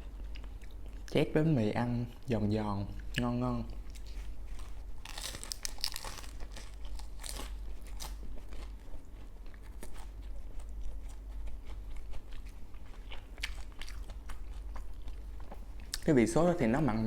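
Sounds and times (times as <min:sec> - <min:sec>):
bread crunching and chewing: 0:03.1 - 0:16.1.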